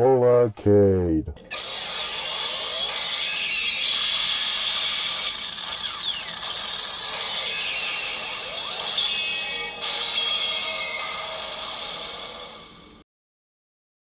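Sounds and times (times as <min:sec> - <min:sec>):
mechanical whirring and ratcheting: 0:01.5 - 0:12.6.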